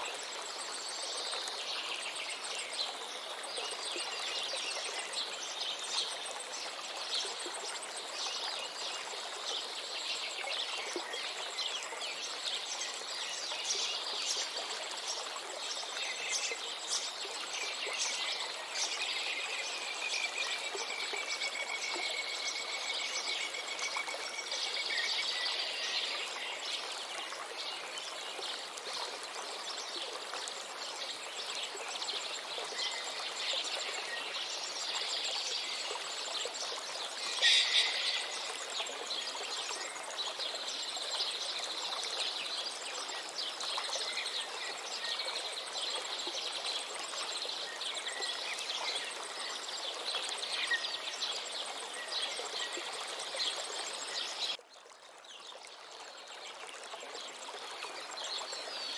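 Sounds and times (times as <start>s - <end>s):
river flowing: 0.0s - 58.9s
small birds chirping: 34.2s - 40.0s.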